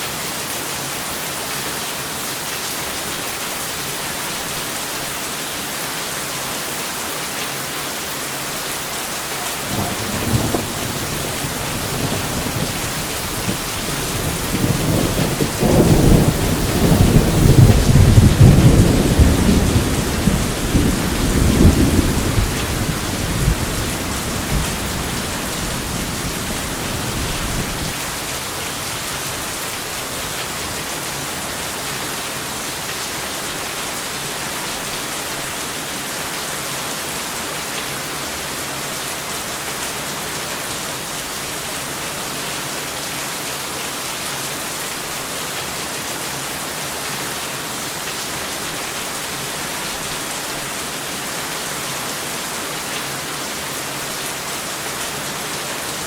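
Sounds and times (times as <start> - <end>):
heavy rain: 0.0 - 56.0
rolling thunder: 9.5 - 28.0.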